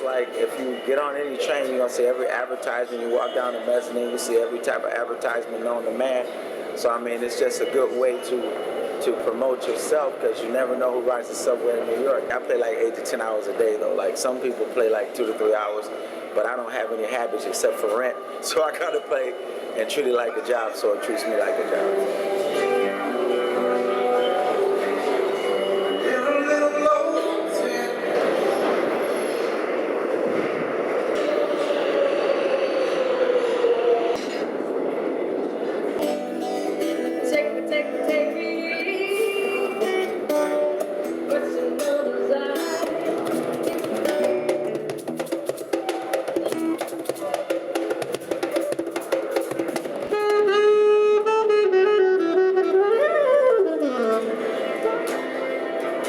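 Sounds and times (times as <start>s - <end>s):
subway train rumble: 0.0s - 56.0s
plucked guitar notes: 36.0s - 45.4s
saxophone bending notes: 50.1s - 56.0s.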